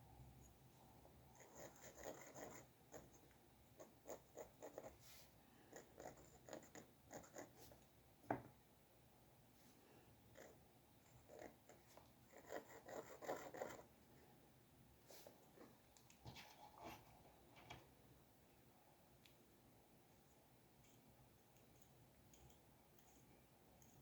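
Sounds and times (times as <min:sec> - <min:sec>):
drawing tool scratching on paper: 0:01.3 - 0:07.8, 0:10.4 - 0:13.9.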